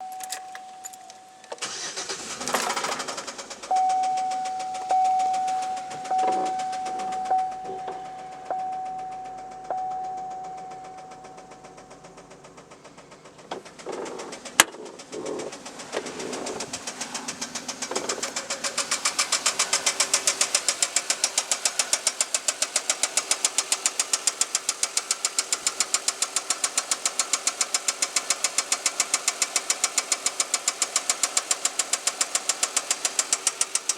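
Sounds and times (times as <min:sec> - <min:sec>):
warning chime dinging: 0:00.0 - 0:01.8, 0:03.7 - 0:12.6
engine cranking and starting: 0:00.0 - 0:33.9
engine idling with loud knock: 0:01.6 - 0:33.9.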